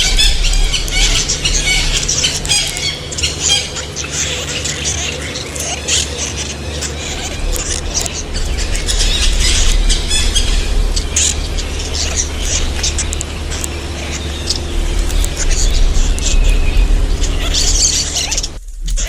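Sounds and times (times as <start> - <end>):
steady low hum: 0.0 - 19.0
young birds cheeping: 0.0 - 19.0.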